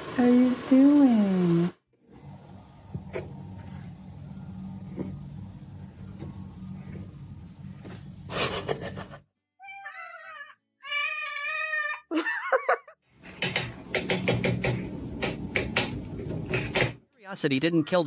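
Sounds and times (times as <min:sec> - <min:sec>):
cat meowing: 0:09.6 - 0:12.0.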